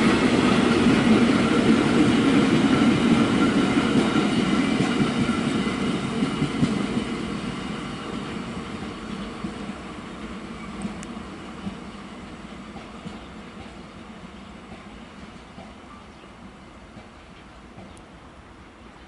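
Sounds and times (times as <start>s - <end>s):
freight train wheels rumbling on rail: 0.0s - 19.0s.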